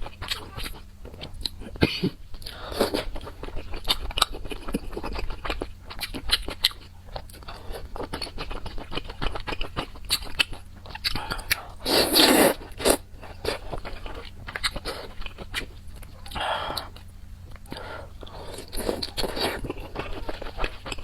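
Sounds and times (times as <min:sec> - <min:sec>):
crunching and chewing: 0:00.0 - 0:21.0.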